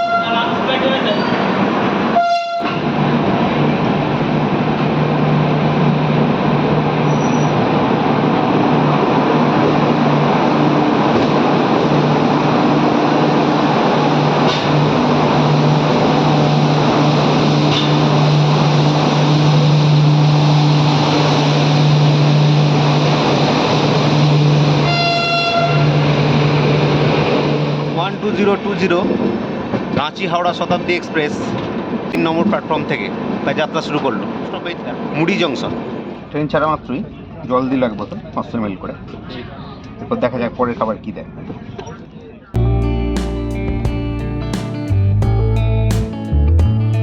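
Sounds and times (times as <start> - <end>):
train rumble: 0.0 - 37.6.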